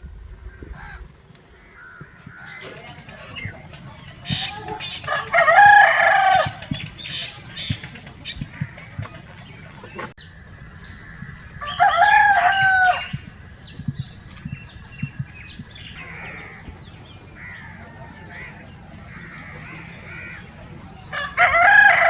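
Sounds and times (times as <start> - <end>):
chicken clucking: 2.2 - 10.2
rooster crowing: 4.3 - 7.0, 11.6 - 13.2, 17.4 - 19.4, 21.1 - 22.0.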